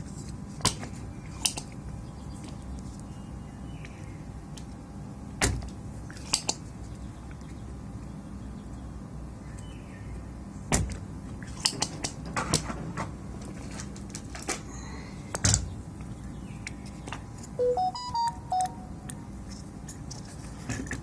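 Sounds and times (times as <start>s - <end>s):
faint steady hum: 13.1s - 21.0s
electronic beep melody: 17.6s - 19.1s.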